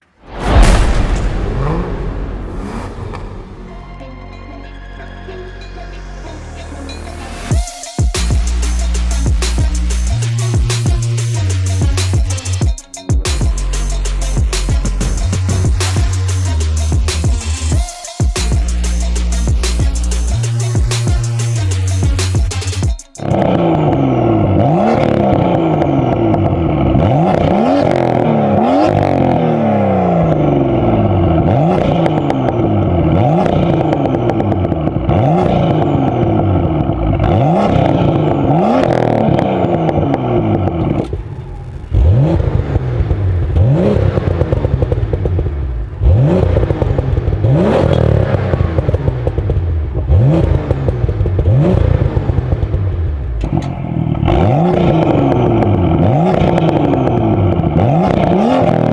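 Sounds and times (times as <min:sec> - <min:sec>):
exhaust crackles and pops: 0:00.0 - 0:03.9, 0:30.3 - 0:58.9
car engine revving: 0:00.0 - 0:07.6, 0:18.5 - 0:58.9.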